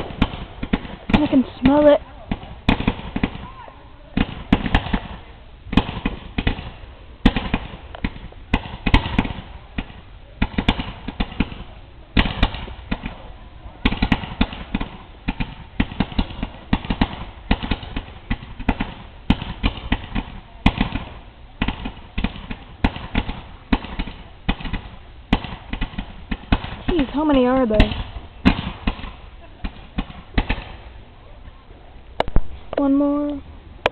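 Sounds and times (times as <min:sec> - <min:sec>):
fireworks bangs and crackles: 0:00.0 - 0:31.6.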